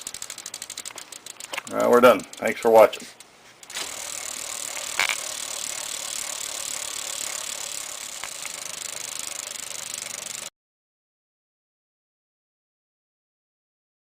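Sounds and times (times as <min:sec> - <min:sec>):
bicycle freewheel ticking: 0:00.0 - 0:10.5.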